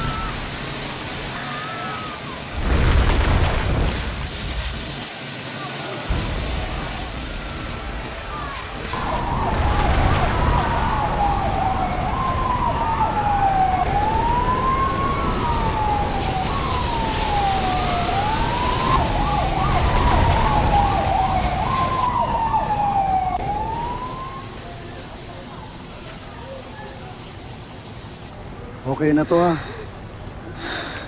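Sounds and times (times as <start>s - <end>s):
second siren: 0.0s - 4.2s, 5.6s - 26.2s
fire truck siren wailing: 0.0s - 26.2s.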